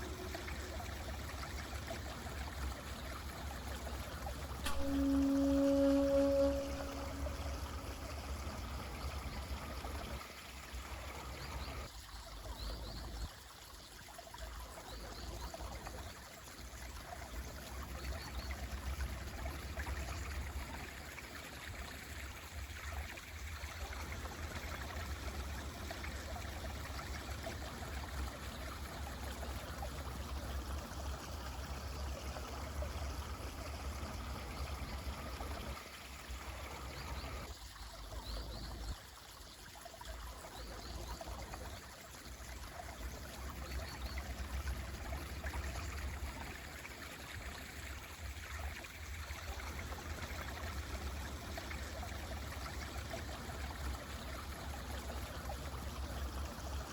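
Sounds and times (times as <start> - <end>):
mountain stream flowing: 0.0 - 56.9
short high chirps: 4.7 - 7.9.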